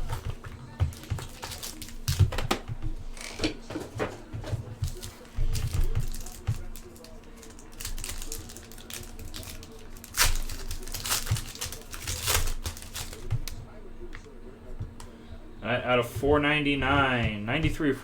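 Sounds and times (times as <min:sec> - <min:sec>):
cardboard rustling: 0:00.0 - 0:13.6
plastic wrapper crinkling and tearing: 0:00.9 - 0:02.4, 0:04.9 - 0:13.6.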